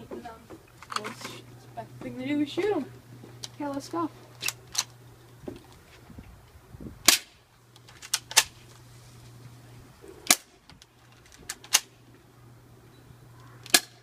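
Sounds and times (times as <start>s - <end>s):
airsoft pistol shots snapping: 7.0s - 7.4s, 10.3s - 10.6s, 13.7s - 14.0s.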